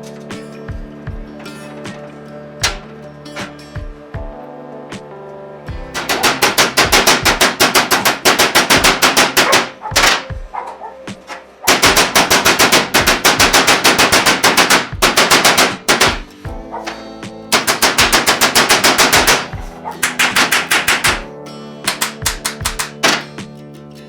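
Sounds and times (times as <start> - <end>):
held chords: 0.0 - 24.0
fast percussive beat: 5.7 - 10.6, 11.7 - 21.3, 21.9 - 23.1.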